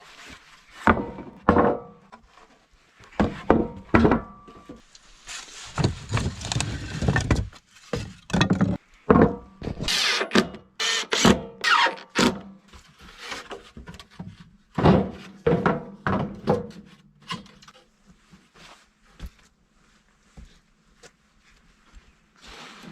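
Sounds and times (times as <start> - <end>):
wood scraping: 4.8 - 8.9
wooden boards thunking: 7.0 - 9.5, 14.8 - 16.7.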